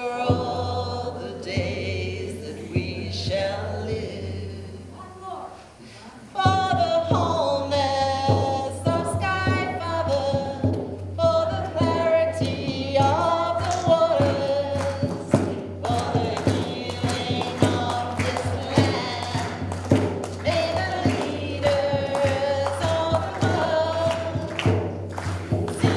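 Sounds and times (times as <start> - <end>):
voices singing with accompaniment: 0.0 - 25.9
sharp percussive hits: 8.2 - 25.9.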